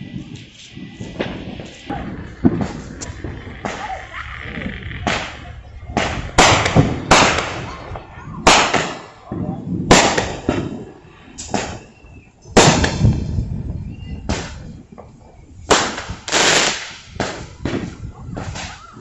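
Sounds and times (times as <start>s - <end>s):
fireworks bangs: 0.0s - 19.0s
fireworks crackling: 0.0s - 19.0s.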